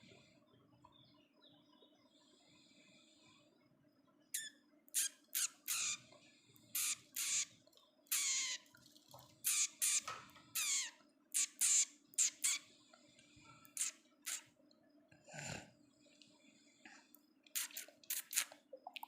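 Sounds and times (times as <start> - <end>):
budgerigars squawking: 4.4 - 6.0, 6.8 - 7.5, 8.1 - 8.6, 9.5 - 12.6.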